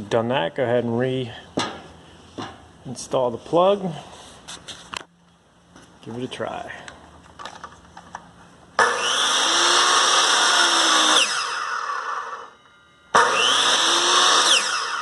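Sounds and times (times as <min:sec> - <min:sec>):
miter saw motor spinning up: 0:08.8 - 0:12.5, 0:13.1 - 0:15.0.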